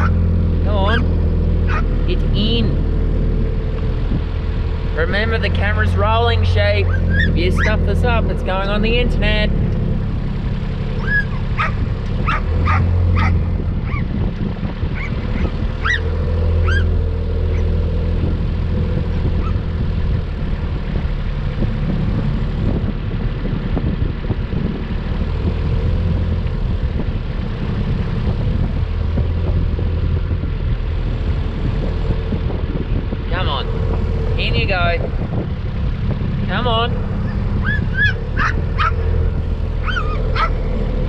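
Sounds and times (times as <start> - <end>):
dog barking: 0.0 - 0.2, 1.7 - 1.9, 6.9 - 7.8, 11.0 - 14.1, 15.0 - 16.0, 16.6 - 16.9, 37.6 - 39.0, 39.8 - 40.6
farm vehicle engine running: 0.0 - 41.0.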